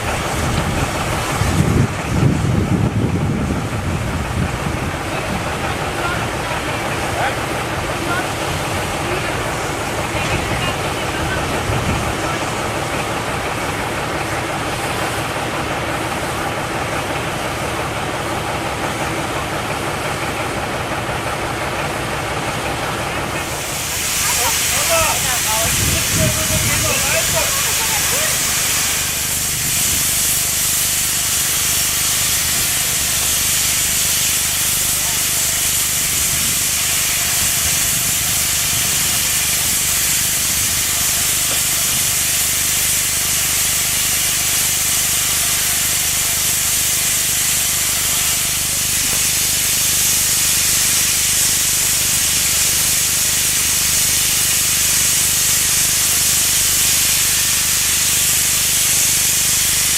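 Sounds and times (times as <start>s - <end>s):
steam locomotive hissing steam: 0.0s - 59.9s.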